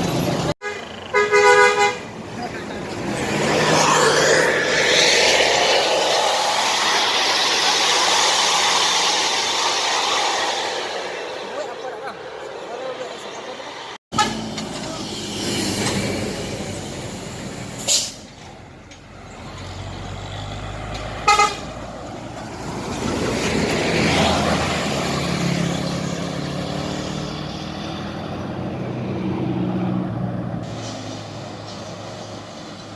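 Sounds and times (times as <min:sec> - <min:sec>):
buses passing with diesel engines: 0:00.0 - 0:32.9
horn toot: 0:00.6 - 0:02.1, 0:21.2 - 0:21.7
vehicle passing close: 0:02.4 - 0:18.0.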